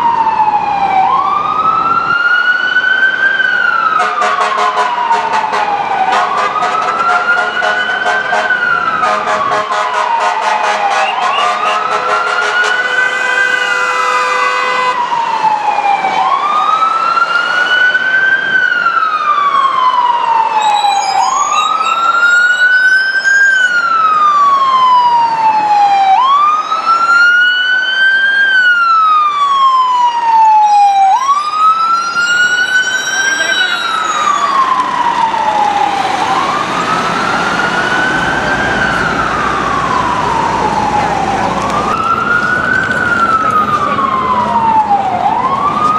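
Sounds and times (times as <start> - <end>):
ambulance siren wailing: 0.0 - 45.9
pulsing horn blaring: 3.9 - 15.1, 31.8 - 35.3.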